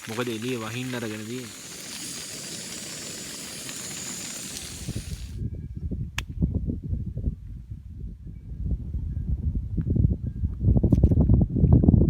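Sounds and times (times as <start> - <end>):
steady hiss: 0.0 - 5.4
wind buffeting microphone: 0.0 - 12.0.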